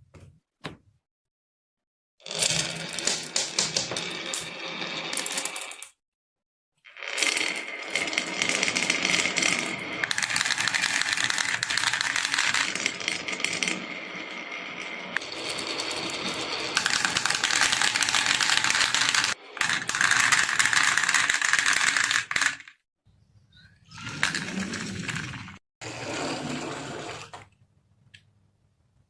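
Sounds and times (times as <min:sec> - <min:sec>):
marbles rattling down wooden run: 0:07.0 - 0:14.4, 0:15.0 - 0:22.7.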